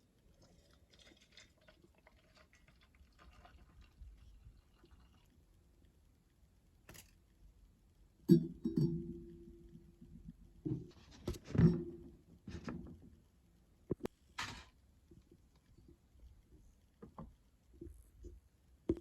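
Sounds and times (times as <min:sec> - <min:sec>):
metal cookware clanking: 0:08.3 - 0:09.8.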